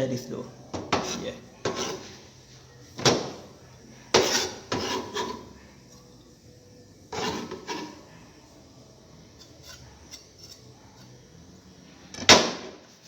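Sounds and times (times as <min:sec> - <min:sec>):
cookware and utensils clattering: 0:00.7 - 0:02.2, 0:02.9 - 0:06.3, 0:07.1 - 0:08.1.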